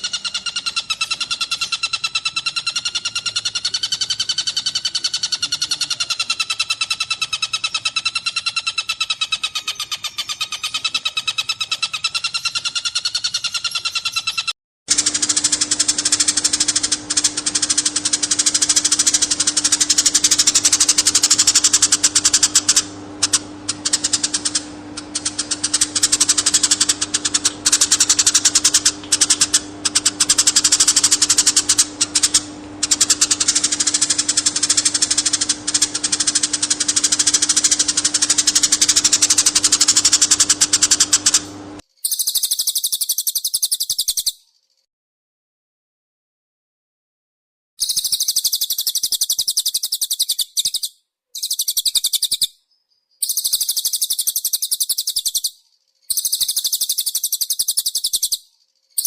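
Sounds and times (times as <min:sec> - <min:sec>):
songbird rattling trill: 0:00.0 - 0:44.9, 0:47.8 - 0:59.0
low hum: 0:14.9 - 0:41.8.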